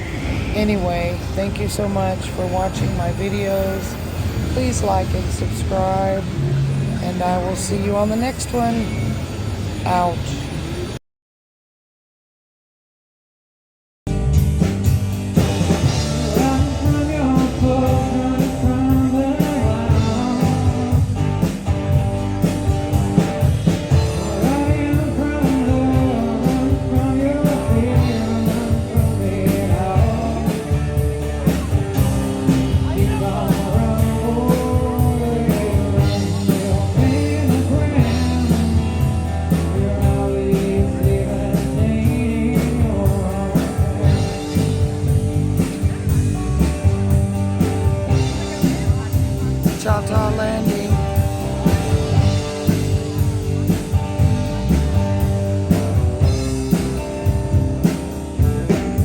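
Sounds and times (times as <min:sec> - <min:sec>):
rock guitar: 0:14.1 - 0:59.0
steady drum beat: 0:14.1 - 0:59.0
person singing: 0:16.0 - 0:21.2, 0:24.0 - 0:44.8, 0:48.5 - 0:53.7.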